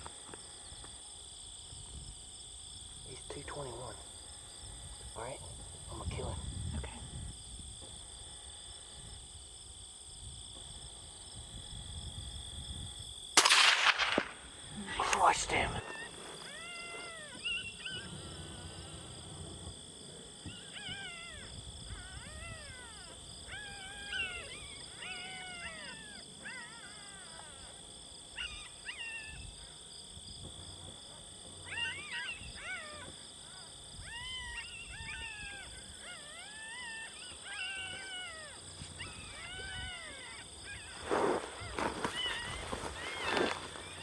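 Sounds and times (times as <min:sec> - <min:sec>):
electronic call yelps and whines: 0:20.4 - 0:27.1, 0:34.0 - 0:41.0.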